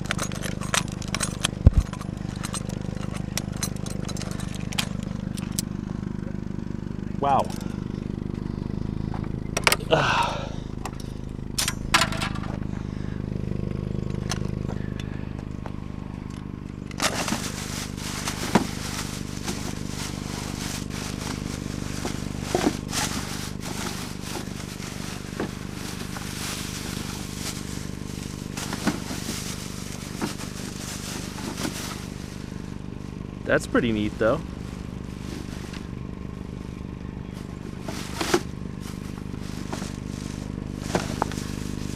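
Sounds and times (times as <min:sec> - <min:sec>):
vehicle engine idling: 0:00.0 - 0:41.9.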